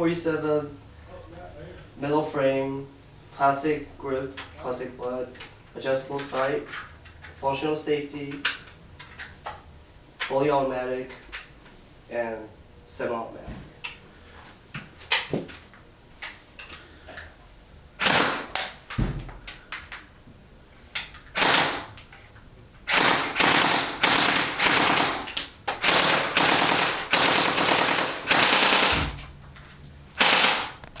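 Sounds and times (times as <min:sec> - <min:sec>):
airsoft rifle firing bursts: 0:18.0 - 0:18.6, 0:21.4 - 0:21.9, 0:22.9 - 0:29.0, 0:30.2 - 0:30.8.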